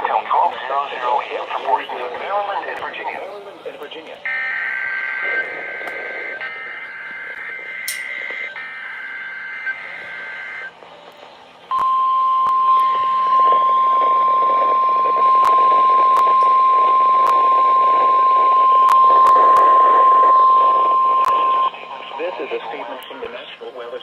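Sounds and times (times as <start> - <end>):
radio hiss: 0.0 - 11.8, 12.5 - 24.0
static clicks: 3.8 - 23.6
steady warning alarm tone: 4.2 - 22.6.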